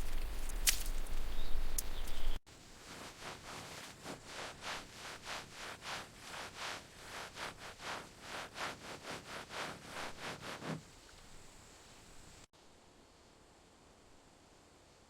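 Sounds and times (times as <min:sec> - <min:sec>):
rhythmic scraping rustles: 0:00.0 - 0:10.8.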